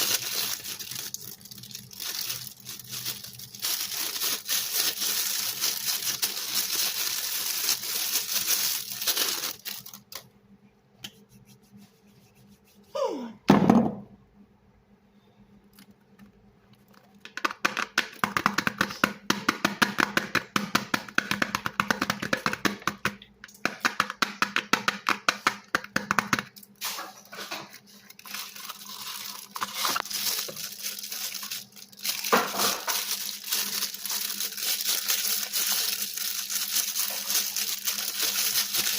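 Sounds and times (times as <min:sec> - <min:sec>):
soap crunching and crackling: 0:00.0 - 0:10.2, 0:27.9 - 0:38.9
faint steady hum: 0:00.0 - 0:17.7.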